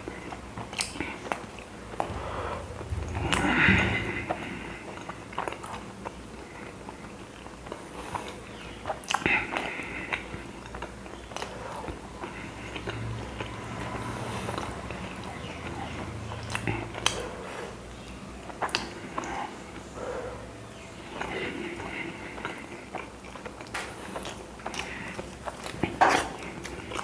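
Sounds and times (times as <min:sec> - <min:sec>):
man chewing: 0:00.0 - 0:27.0
mouth clicks and smacks: 0:00.6 - 0:06.2, 0:07.6 - 0:12.0, 0:17.9 - 0:19.6, 0:21.1 - 0:27.0.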